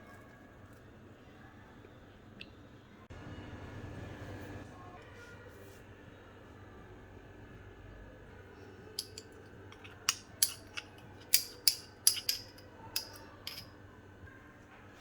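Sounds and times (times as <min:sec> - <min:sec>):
metallic clinks of kitchen utensil: 0:09.0 - 0:13.7.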